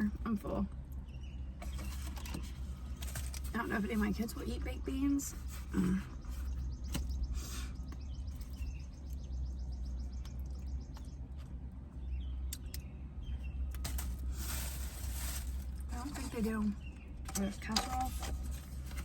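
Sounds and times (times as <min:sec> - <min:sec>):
small birds chirping: 0:00.0 - 0:19.0
steady low hum: 0:00.0 - 0:19.0
rustle: 0:13.8 - 0:16.9.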